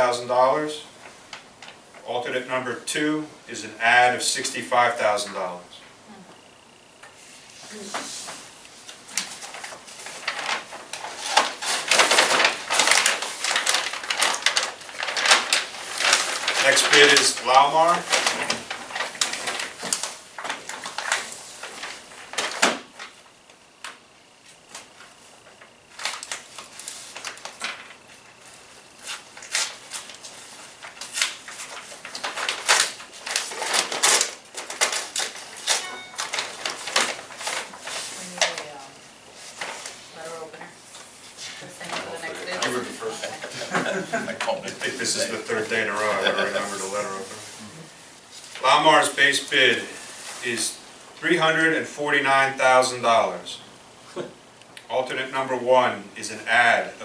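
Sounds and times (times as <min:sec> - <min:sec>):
paper rustling: 0:07.2 - 0:23.2, 0:23.9 - 0:47.6, 0:48.2 - 0:50.8.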